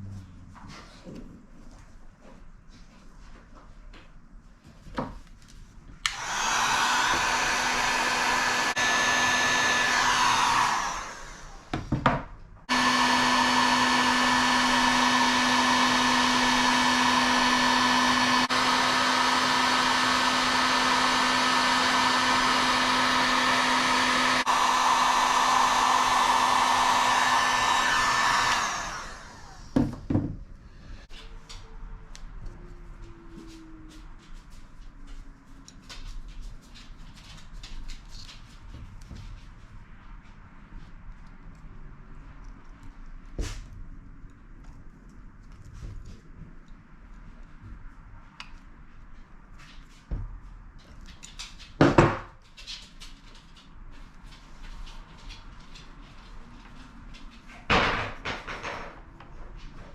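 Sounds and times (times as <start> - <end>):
heat gun blowing: 6.0 - 11.9, 12.7 - 30.0.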